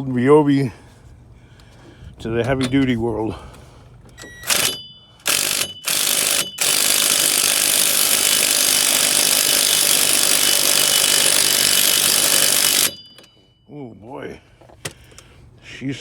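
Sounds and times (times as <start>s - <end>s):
impact tool hammering: 4.5s - 13.3s.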